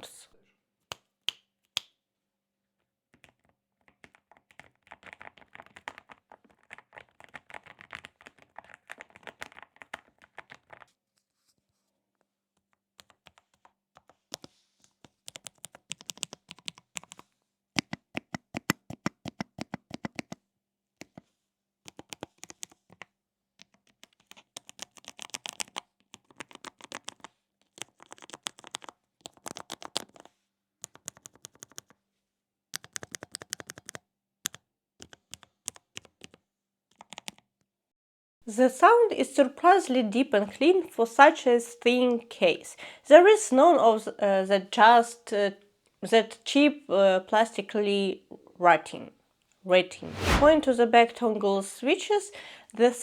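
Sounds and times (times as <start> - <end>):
mechanical keyboard typing: 4.0 - 10.8.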